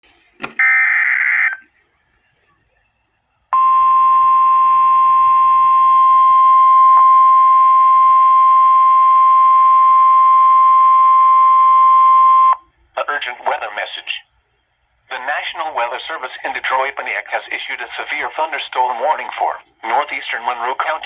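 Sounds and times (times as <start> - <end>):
steady attention tone: 3.6 - 12.6.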